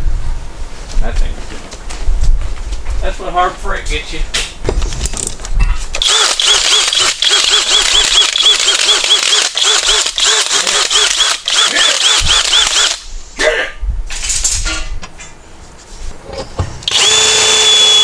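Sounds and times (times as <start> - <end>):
power drill drilling metal: 6.0 - 13.0, 16.8 - 18.0.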